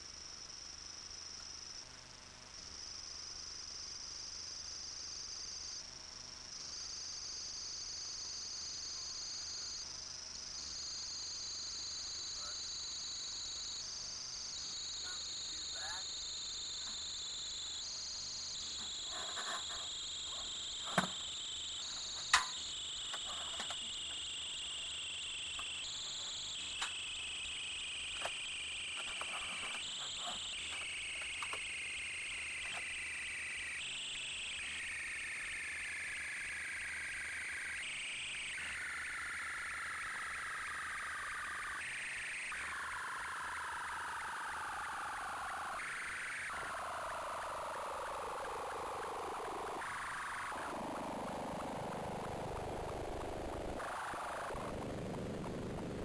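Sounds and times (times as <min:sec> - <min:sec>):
sharp clicks: 0:21.9 - 0:24.2, 0:28.1 - 0:31.7.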